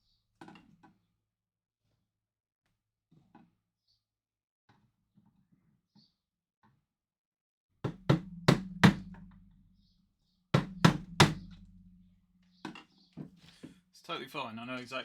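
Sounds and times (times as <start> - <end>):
hammer blows on workpiece: 10.6 - 11.7
low ringing hum: 11.0 - 12.3.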